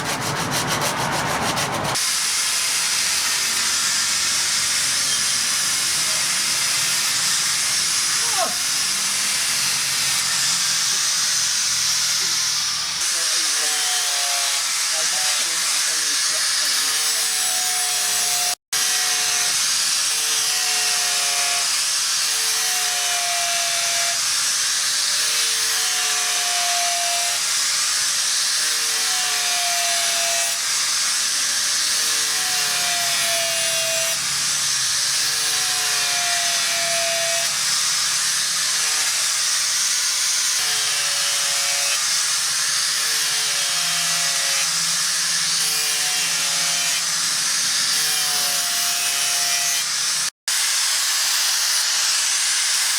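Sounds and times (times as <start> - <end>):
abrasive scraping strokes: 0.0 - 2.1.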